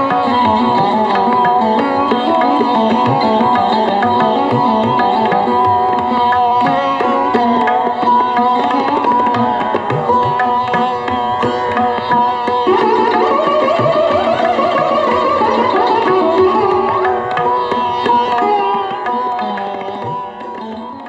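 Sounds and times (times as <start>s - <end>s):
plucked sitar: 0.0s - 21.0s
tabla drumming: 0.0s - 21.0s.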